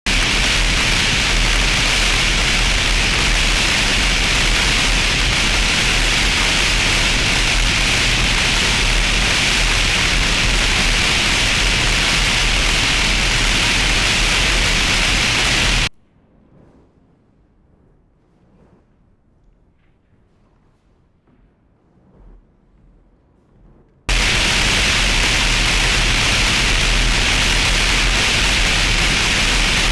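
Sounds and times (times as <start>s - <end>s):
white noise hiss: 0.1s - 15.9s, 24.1s - 29.9s.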